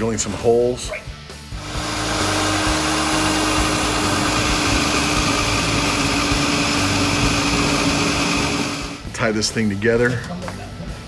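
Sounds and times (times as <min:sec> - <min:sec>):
magnetic drill boring steel: 0:01.5 - 0:09.1.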